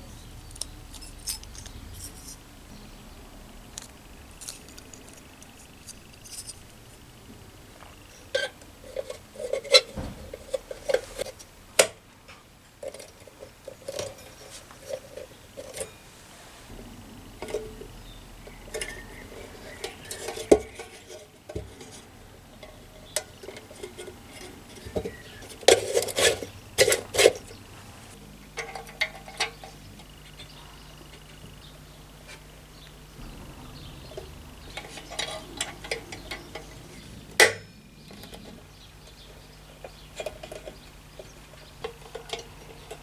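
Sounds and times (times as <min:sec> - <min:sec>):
faint low hum: 0:00.0 - 0:43.0
metal parts clinking: 0:00.4 - 0:02.6, 0:03.8 - 0:06.9.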